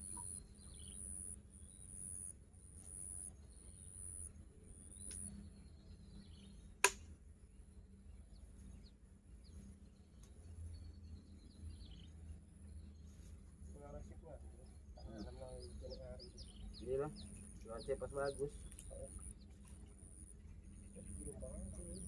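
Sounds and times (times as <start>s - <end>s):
birds chirping faintly: 0.0s - 22.0s
sharp click: 6.8s - 7.0s.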